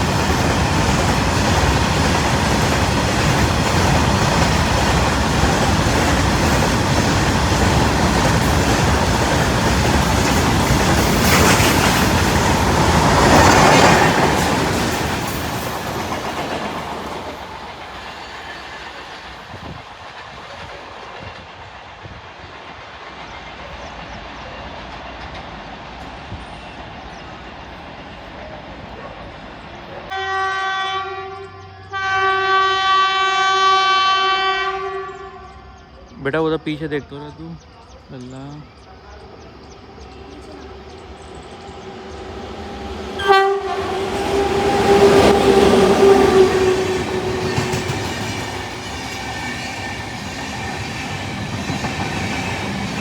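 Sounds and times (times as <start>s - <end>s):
train wheels clattering on rails: 0.0s - 29.9s, 39.6s - 53.0s
train horn: 30.1s - 35.8s, 42.0s - 48.8s.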